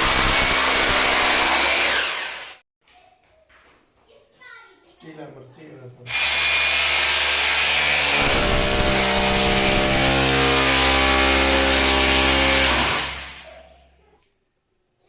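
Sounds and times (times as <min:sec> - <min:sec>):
electric drill running: 0:00.0 - 0:02.6, 0:06.1 - 0:13.5.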